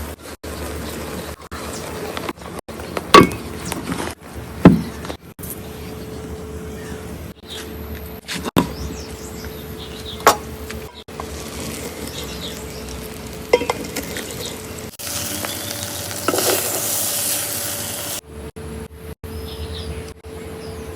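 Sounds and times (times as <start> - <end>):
frying sizzle: 11.0 - 18.2.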